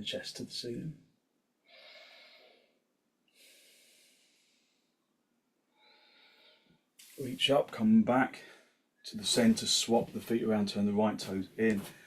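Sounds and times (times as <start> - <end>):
faint breathing through nose: 1.7 - 5.0, 5.8 - 7.4.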